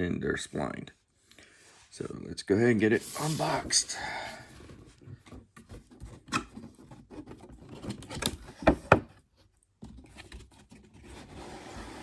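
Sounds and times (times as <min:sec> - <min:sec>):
cardboard box rustling: 0:02.9 - 0:12.0.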